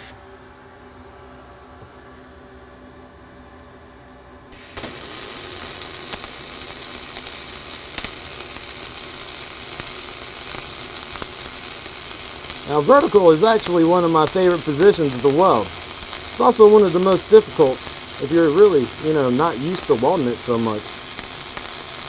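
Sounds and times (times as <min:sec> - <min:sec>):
welding arc crackling sizzle: 0:04.5 - 0:22.0
welding machine hum: 0:04.5 - 0:22.0.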